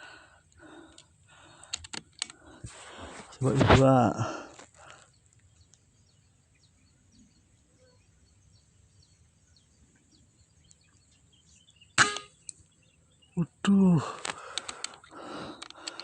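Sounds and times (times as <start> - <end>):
faint bird chirps: 4.8 - 14.1
air rifle shot: 12.0 - 12.4.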